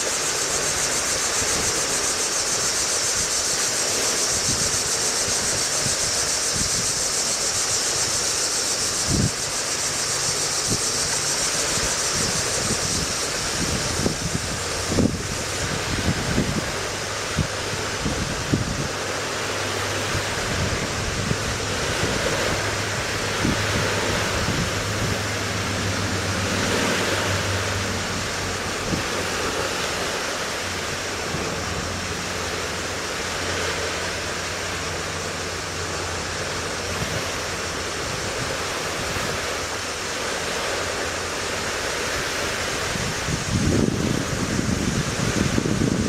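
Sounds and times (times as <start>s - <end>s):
wind blowing across microphone: 0.0s - 46.0s.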